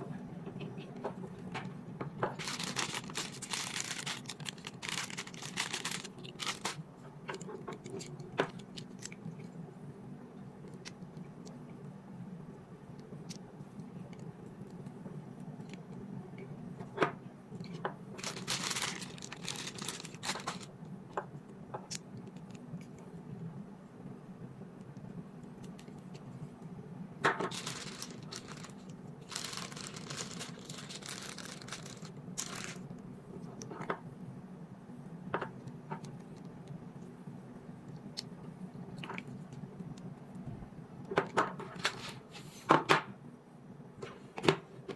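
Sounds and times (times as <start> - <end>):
plastic wrapping crinkling: 2.2 - 9.3, 18.2 - 20.7, 27.4 - 32.9.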